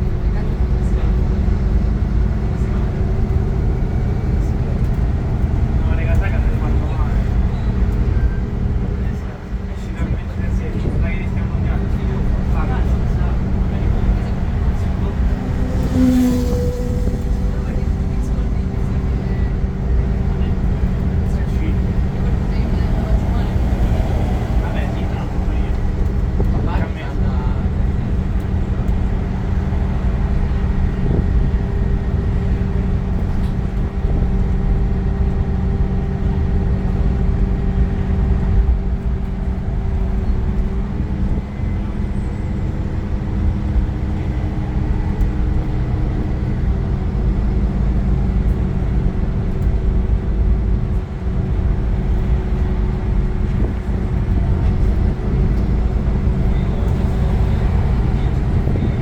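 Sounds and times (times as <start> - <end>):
bus diesel engine rumble: 0.0 - 59.0
steady whining tones: 11.1 - 29.0.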